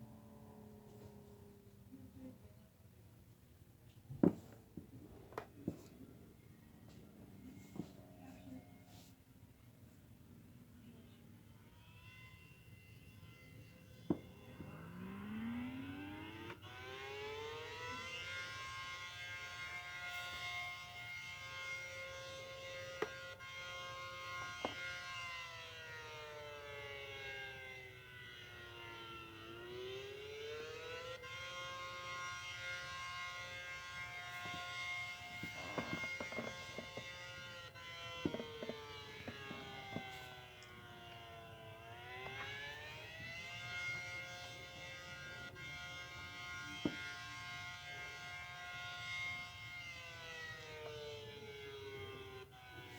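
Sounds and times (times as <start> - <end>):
warning siren wailing: 11.4 - 52.9.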